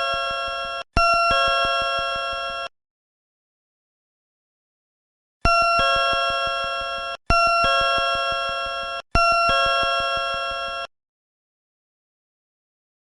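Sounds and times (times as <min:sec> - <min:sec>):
multi-tone electronic chime: 0:05.5 - 0:10.9.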